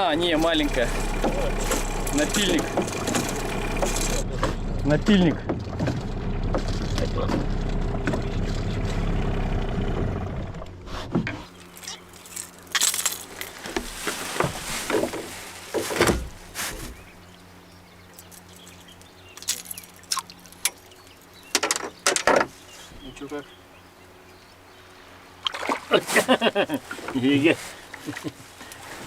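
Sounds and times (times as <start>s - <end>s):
boat motor running: 0.0s - 12.7s
fishing gear clicking and knocking: 0.4s - 4.7s.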